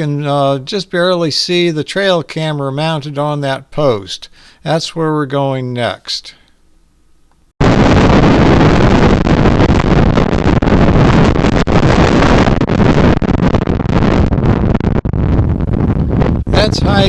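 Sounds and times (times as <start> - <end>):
wind buffeting microphone: 7.6 - 17.0.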